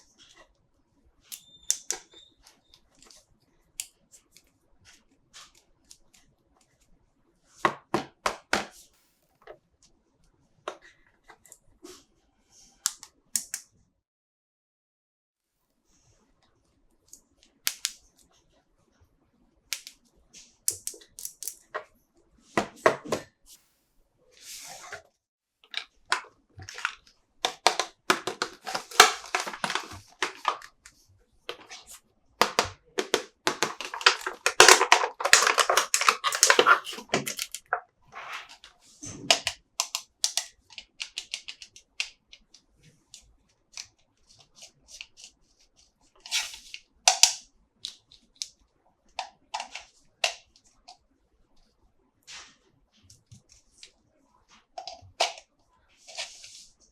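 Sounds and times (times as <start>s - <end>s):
packaging rustling: 26.1s - 30.7s, 32.4s - 37.8s
plastic clicks and taps: 32.4s - 37.8s.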